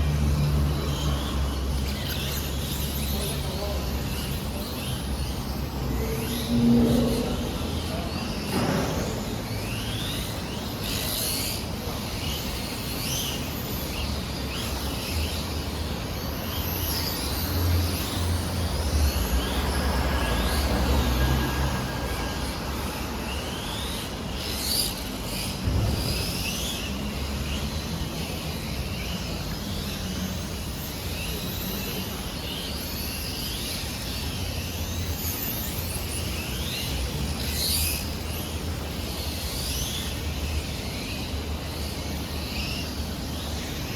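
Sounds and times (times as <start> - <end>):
low traffic rumble: 0.0 - 43.9.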